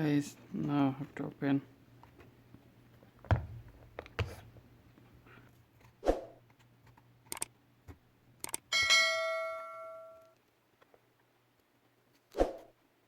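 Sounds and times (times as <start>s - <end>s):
metal tool clang: 8.7s - 10.2s.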